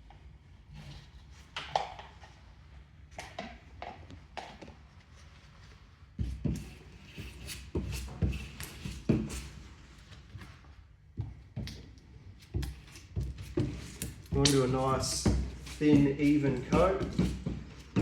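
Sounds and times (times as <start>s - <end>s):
knocks taps and rubbing of hands: 12.6s - 18.0s.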